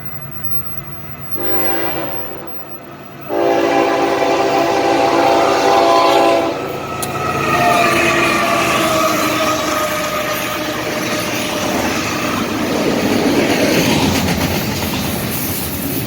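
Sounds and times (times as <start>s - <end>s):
rumble of approaching train: 0.0s - 16.0s
locomotive air horn blasts: 1.3s - 2.6s, 3.2s - 6.8s, 7.5s - 11.8s.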